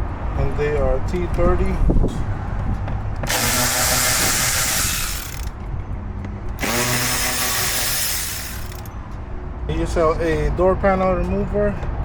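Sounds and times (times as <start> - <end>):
power driver whining: 3.2 - 5.6, 6.6 - 8.9.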